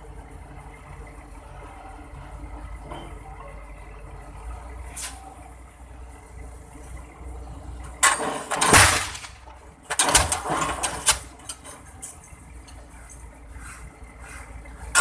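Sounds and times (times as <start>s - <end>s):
pile-driving hammer blasts: 8.0s - 10.8s.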